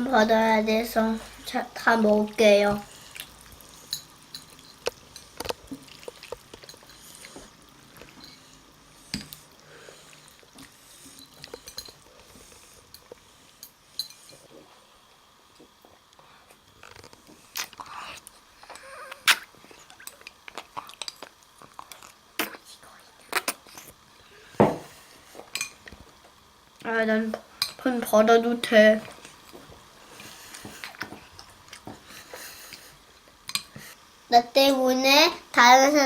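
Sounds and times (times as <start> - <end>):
wet chewing noises: 2.3 - 13.6, 15.6 - 24.0.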